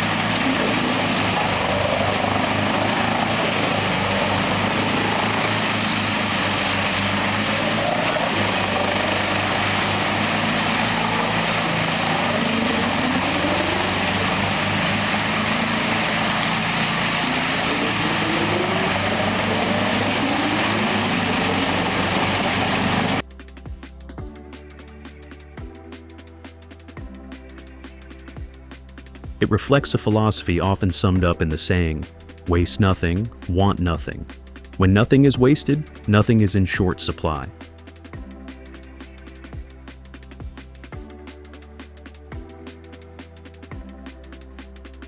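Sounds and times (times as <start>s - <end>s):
heavy machinery running: 0.0s - 23.2s
machine whines rising and falling: 0.0s - 23.2s.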